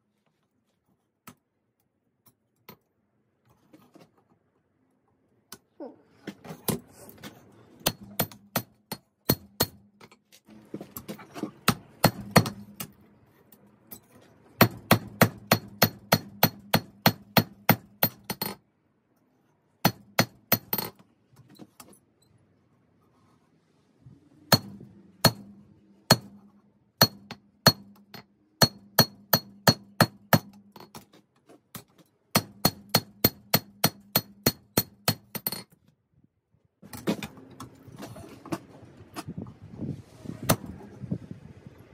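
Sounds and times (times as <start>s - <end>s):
hammer striking steel on anvil: 24.5s - 26.4s, 27.0s - 30.6s.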